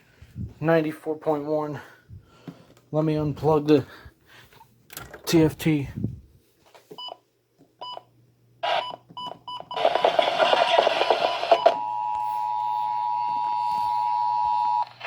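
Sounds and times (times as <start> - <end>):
harsh noisy radio burst: 9.8 - 11.6.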